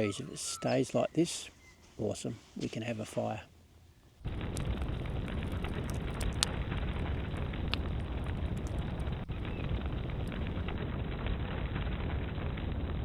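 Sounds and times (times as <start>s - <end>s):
campfire roaring: 4.2s - 13.0s
fire crackles and pops: 4.2s - 13.0s.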